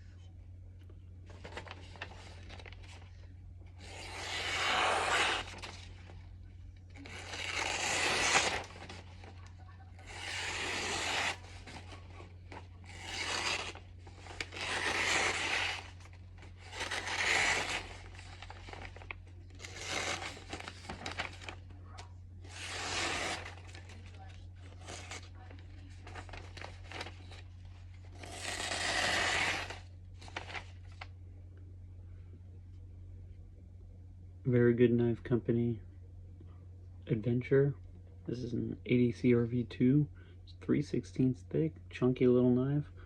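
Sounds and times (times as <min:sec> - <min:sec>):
low electrical hum: 0:00.0 - 0:43.0
knife blade slicing paper: 0:28.2 - 0:29.8.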